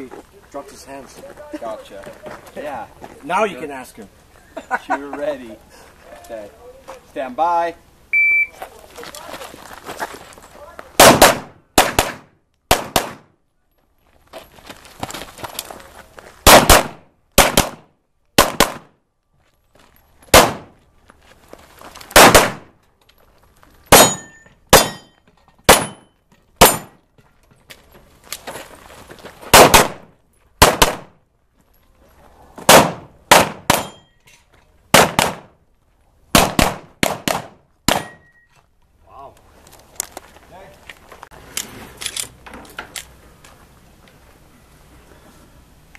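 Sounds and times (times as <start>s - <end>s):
pistol shots: 11.0s - 13.3s, 16.5s - 18.9s, 20.3s - 20.7s, 22.2s - 22.7s, 23.9s - 25.1s, 25.7s - 26.0s, 26.6s - 27.0s, 29.5s - 31.1s, 32.7s - 34.0s, 34.9s - 35.5s, 36.3s - 38.3s.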